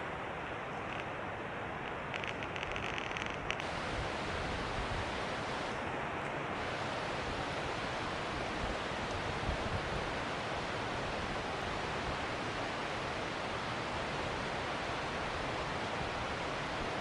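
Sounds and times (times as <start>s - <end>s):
rapid high ticks: 0.8s - 1.2s, 1.8s - 3.7s
waterfall rushing: 3.6s - 5.8s, 6.6s - 17.0s.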